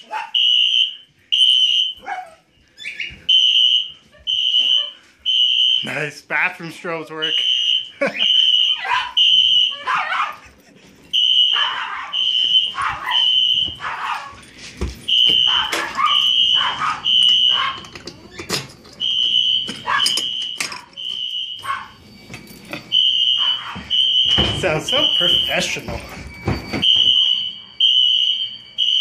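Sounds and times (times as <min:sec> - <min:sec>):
fire alarm horn beeps: 0:00.4 - 0:02.0, 0:03.3 - 0:06.0, 0:07.1 - 0:09.9, 0:11.1 - 0:13.9, 0:15.0 - 0:18.0, 0:19.0 - 0:29.0.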